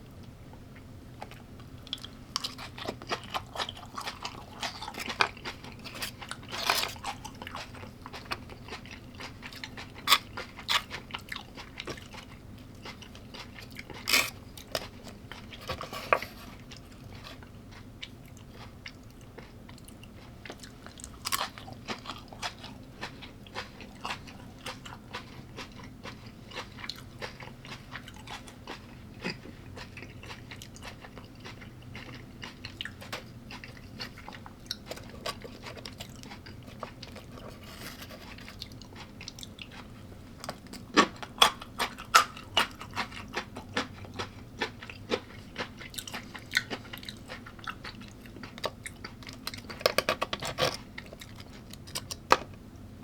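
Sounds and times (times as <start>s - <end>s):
person chewing crunchy food: 1.2s - 52.7s.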